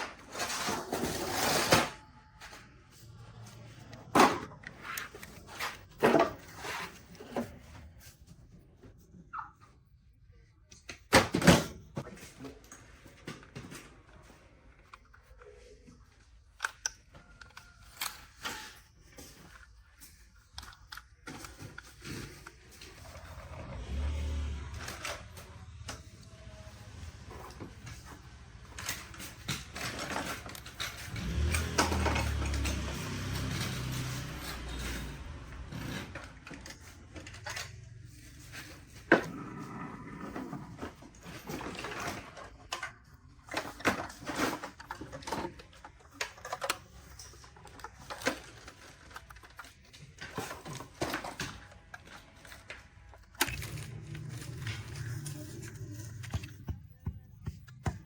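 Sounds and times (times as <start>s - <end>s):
plastic toy parts clicking: 19.4s - 22.5s.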